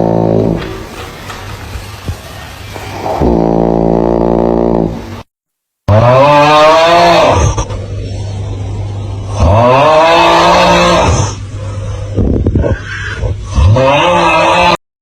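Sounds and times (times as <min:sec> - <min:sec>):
person snoring loudly: 0:00.0 - 0:00.6, 0:02.8 - 0:05.2, 0:05.9 - 0:07.6, 0:09.3 - 0:11.4, 0:12.6 - 0:14.8
steady low hum: 0:05.9 - 0:14.8.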